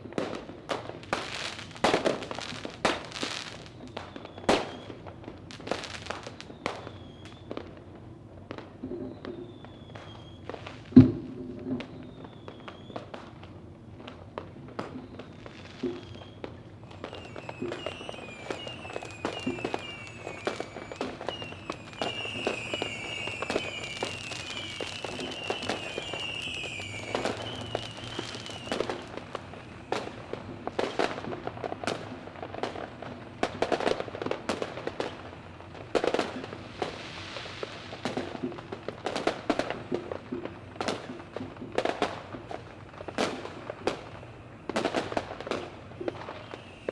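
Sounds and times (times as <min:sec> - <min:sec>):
fireworks crackling and banging: 0:00.0 - 0:46.9
high falling whistle: 0:16.0 - 0:31.2, 0:46.2 - 0:46.9.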